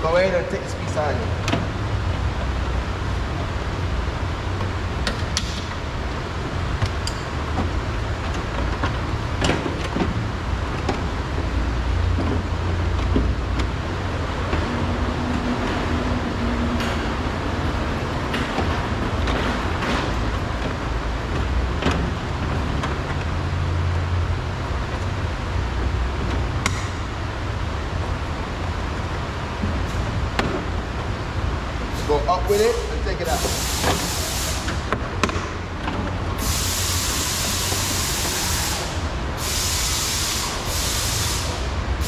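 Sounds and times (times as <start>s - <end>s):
steady low rumble: 0.0s - 33.4s.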